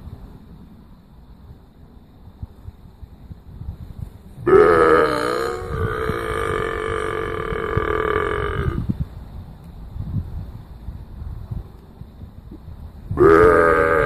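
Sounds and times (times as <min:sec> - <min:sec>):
cow mooing: 0:04.5 - 0:08.8, 0:13.2 - 0:14.0.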